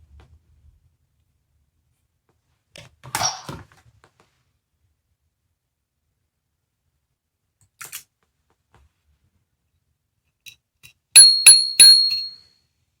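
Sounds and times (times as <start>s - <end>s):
toy bell dings: 11.2s - 12.5s.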